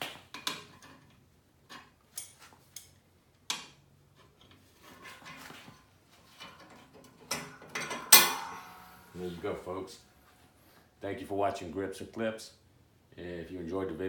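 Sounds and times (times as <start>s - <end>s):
spring clinking against metal: 7.1s - 9.2s.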